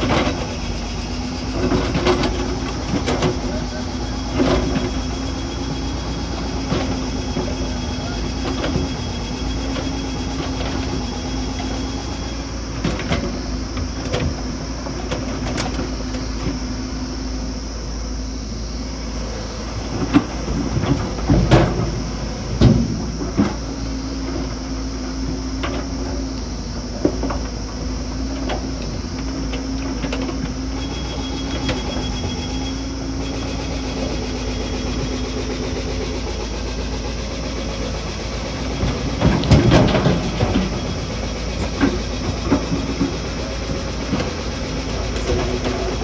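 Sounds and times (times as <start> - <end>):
diesel engine drone: 0.0 - 46.0
metallic clanks and knocks: 37.8 - 46.0.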